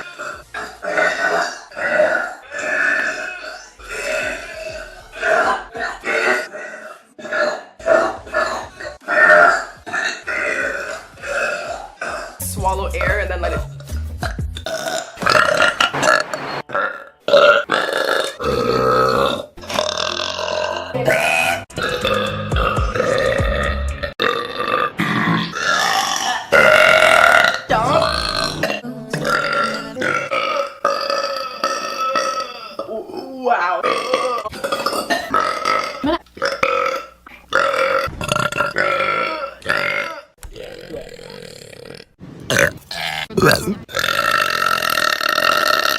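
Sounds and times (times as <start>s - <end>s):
woman burping loudly: 14.6s - 45.9s.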